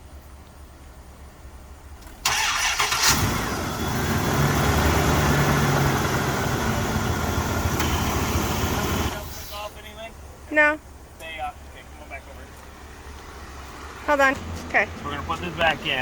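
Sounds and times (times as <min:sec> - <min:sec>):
truck engine idling: 0:01.5 - 0:16.0
engine starter cranking: 0:02.0 - 0:05.2, 0:05.8 - 0:09.5.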